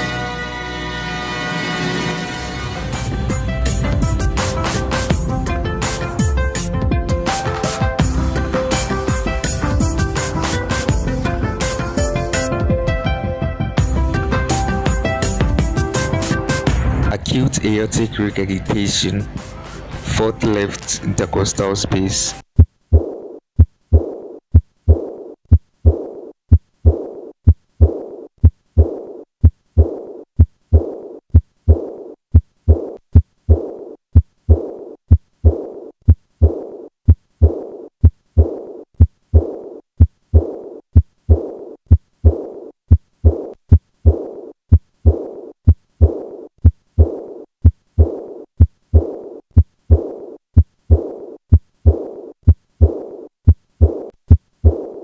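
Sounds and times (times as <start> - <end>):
heartbeat thumps: 3.1 - 7.2, 8.0 - 10.3, 22.4 - 55.0
blowing heart murmur: 22.6 - 55.0.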